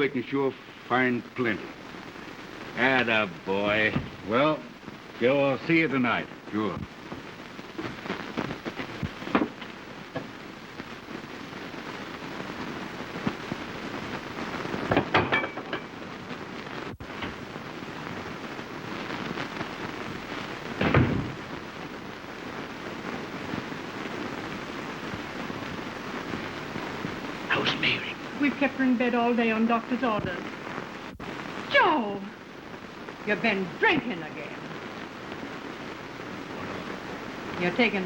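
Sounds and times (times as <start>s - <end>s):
film soundtrack hiss and crackle: 0.0s - 38.0s
dull knocks: 20.8s - 21.4s.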